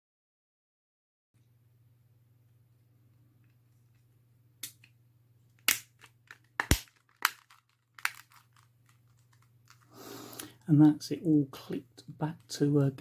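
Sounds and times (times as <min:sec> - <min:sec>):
plastic casing clicks and snaps: 0:04.6 - 0:04.9, 0:05.6 - 0:10.5.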